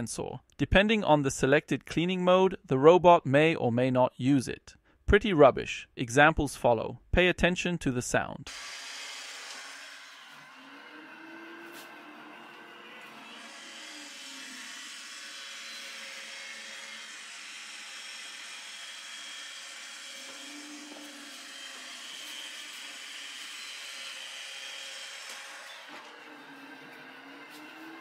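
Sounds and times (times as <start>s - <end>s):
robot vacuum whirring hum: 8.5s - 28.0s.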